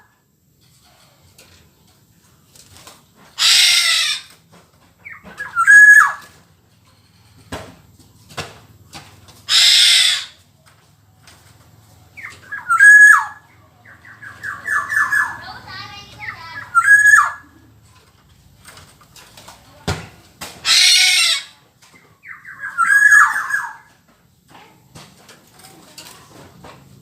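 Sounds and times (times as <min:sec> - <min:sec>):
oriole screeching: 0:03.4 - 0:04.3, 0:09.5 - 0:10.4, 0:12.2 - 0:15.4, 0:20.6 - 0:21.6
bird whistling phrases: 0:05.1 - 0:06.3, 0:12.2 - 0:15.4, 0:16.2 - 0:17.5, 0:22.2 - 0:23.9.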